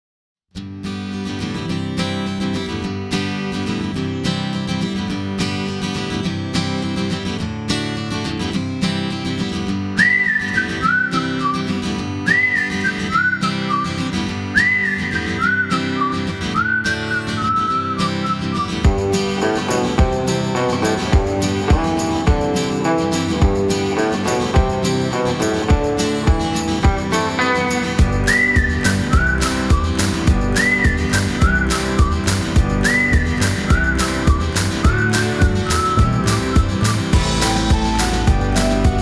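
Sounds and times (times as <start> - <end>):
acoustic guitar picking: 0.8 - 39.0
whistled melody: 10.0 - 39.0.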